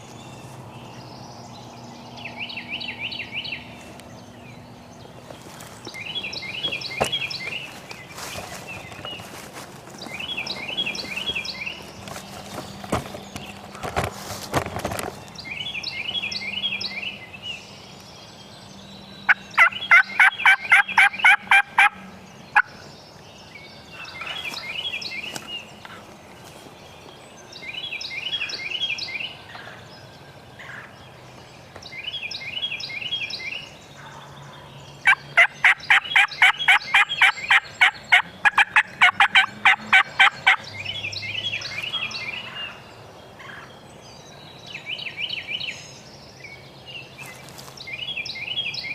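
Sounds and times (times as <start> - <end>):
songbird singing high phrase: 15.3 - 21.4
turkey yelping: 19.6 - 22.0, 35.1 - 40.6.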